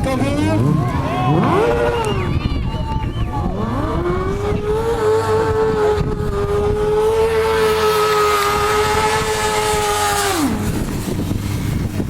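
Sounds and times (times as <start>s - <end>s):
motorcycle engine at high revs: 3.4s - 12.0s.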